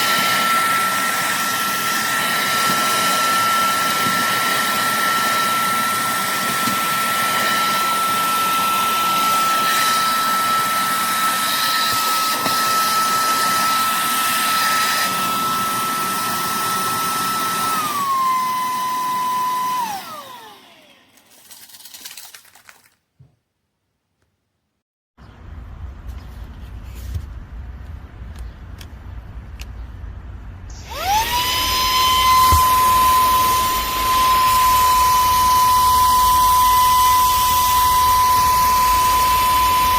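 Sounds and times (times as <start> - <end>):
motor winding down: 0.0 - 21.4, 30.7 - 39.9
handheld vacuum whining: 0.0 - 21.8, 30.7 - 39.9.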